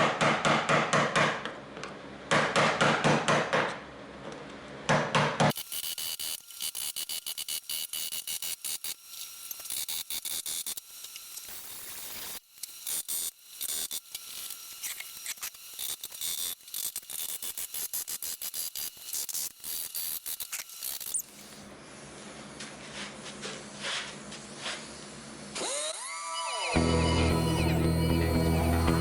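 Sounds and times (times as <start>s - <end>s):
electronic music: 25.8s - 29.0s.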